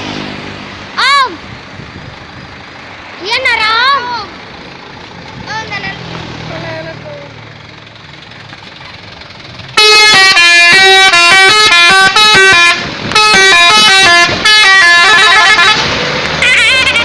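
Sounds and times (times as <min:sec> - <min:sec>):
truck horn playing a melody: 0:09.8 - 0:17.0.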